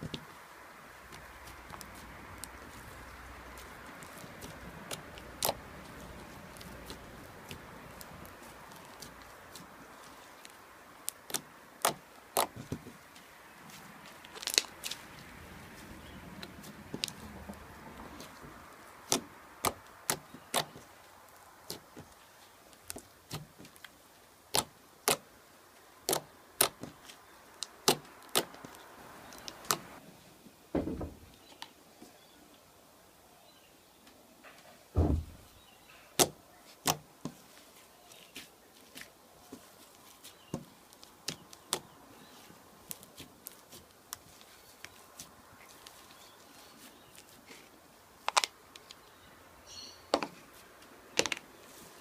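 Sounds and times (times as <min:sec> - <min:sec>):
low thump: 0:30.7 - 0:31.2, 0:35.0 - 0:35.5.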